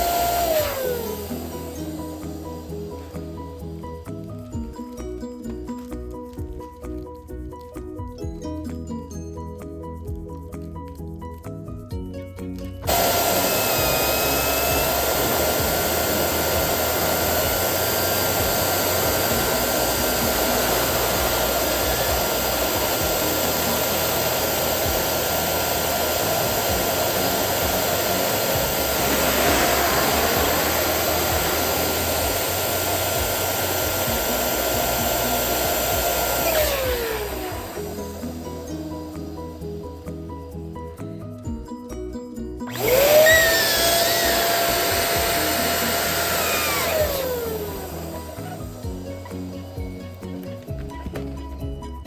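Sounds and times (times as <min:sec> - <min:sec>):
balloon pump motor whine: 0:00.0 - 0:03.7, 0:12.8 - 0:39.6, 0:42.7 - 0:49.9.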